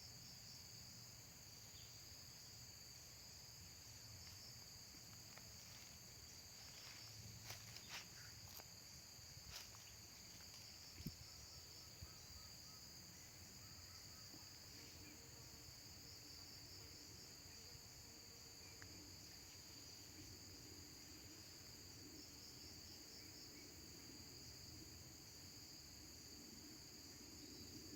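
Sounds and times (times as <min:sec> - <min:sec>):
high-pitched insect chorus: 0:00.0 - 0:27.9.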